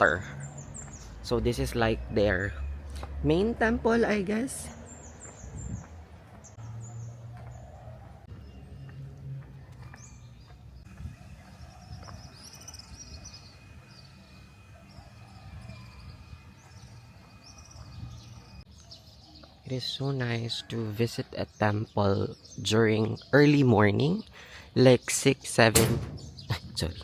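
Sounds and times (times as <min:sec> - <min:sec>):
birds chirping: 0:00.0 - 0:27.0.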